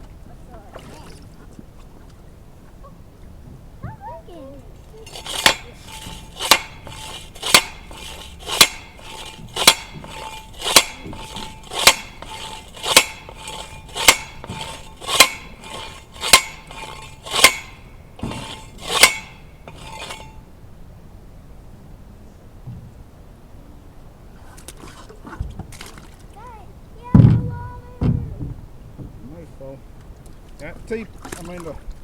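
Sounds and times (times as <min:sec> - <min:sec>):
post driver ringing metal clanks: 0:05.0 - 0:20.4.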